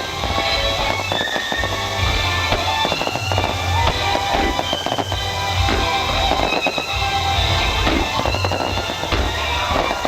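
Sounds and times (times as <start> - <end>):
fireworks bursting and crackling: 0.0 - 10.0
music playing: 0.0 - 10.0.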